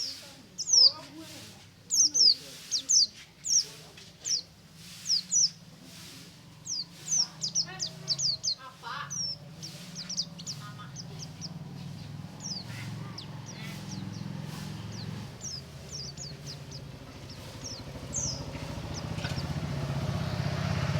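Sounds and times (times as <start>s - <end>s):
steady low hum: 4.4s - 20.5s
bird chirping high notes: 6.6s - 20.0s.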